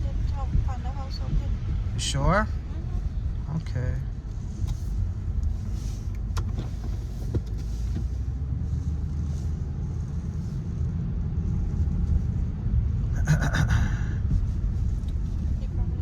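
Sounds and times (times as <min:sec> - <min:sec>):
car engine and road rumble: 0:00.0 - 0:16.0.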